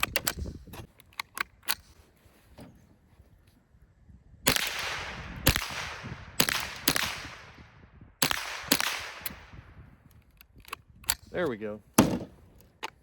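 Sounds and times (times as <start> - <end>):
rifle shots with echo: 4.5 - 9.8.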